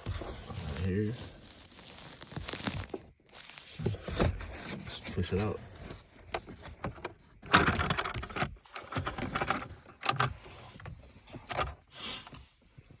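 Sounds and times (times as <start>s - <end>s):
plastic and metal parts rattling: 3.8s - 11.8s.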